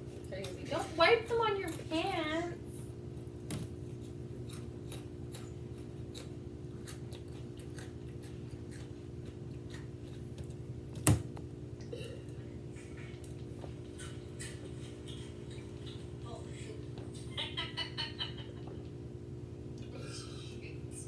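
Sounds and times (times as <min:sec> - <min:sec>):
chewing crunchy snacks: 0:02.7 - 0:10.7.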